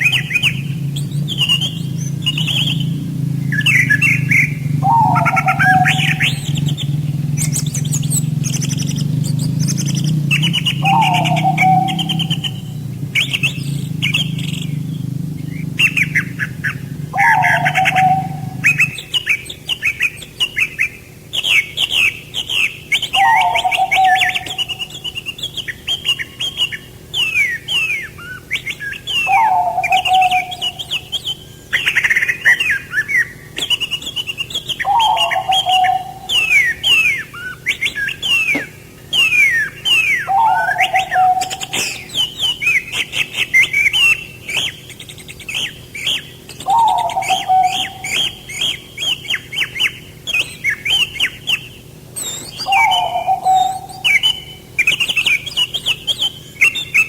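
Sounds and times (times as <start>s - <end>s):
lower bird call: 0.0s - 57.0s
songbirds chirping: 0.0s - 57.0s.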